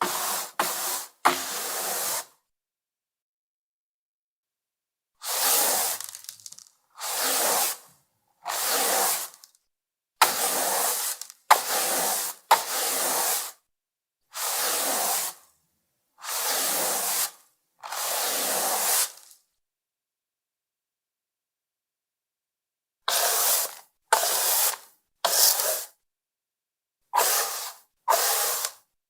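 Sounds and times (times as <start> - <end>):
mop swishing over parquet floor: 0.0 - 2.3, 5.2 - 6.3, 7.0 - 9.5, 10.2 - 13.6, 14.4 - 15.4, 16.2 - 19.4, 23.1 - 25.9, 27.2 - 28.8.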